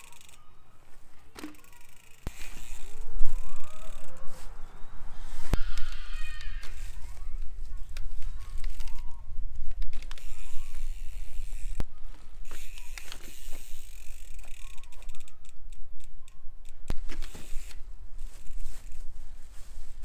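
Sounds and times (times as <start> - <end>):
bicycle rattling and clicking: 0.0 - 0.6, 1.3 - 4.3, 5.7 - 19.2
steady low rumble: 2.6 - 5.6.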